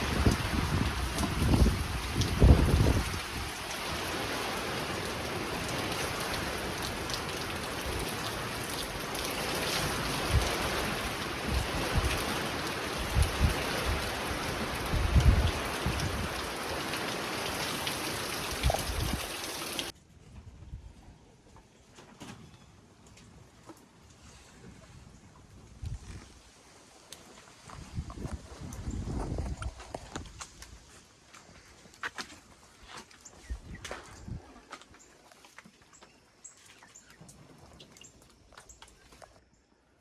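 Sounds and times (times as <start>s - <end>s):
wind buffeting microphone: 0.0s - 6.6s, 7.8s - 21.0s, 25.6s - 26.4s, 27.7s - 30.9s, 33.4s - 34.6s
heavy rain pouring: 0.0s - 19.9s.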